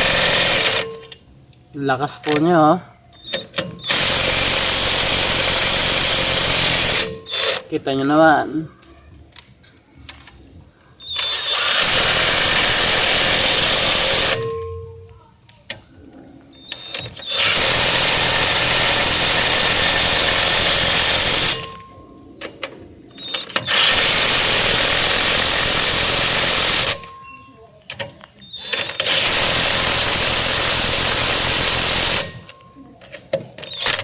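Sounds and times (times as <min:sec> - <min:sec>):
impact wrench hammering: 0:00.0 - 0:01.2, 0:03.3 - 0:07.6, 0:11.4 - 0:14.9, 0:17.0 - 0:22.0, 0:23.4 - 0:27.3, 0:27.9 - 0:32.6.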